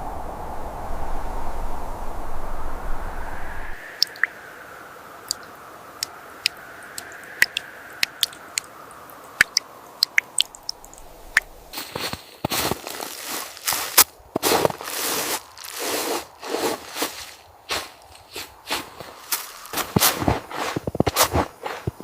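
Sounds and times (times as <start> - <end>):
wood fire crackling: 6.0 - 12.1
crunching and rustling: 10.4 - 22.0.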